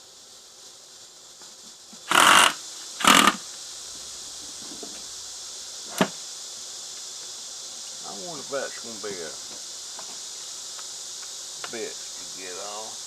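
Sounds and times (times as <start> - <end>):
insects droning: 0.0 - 13.0
loud rasping bursts: 2.1 - 3.4.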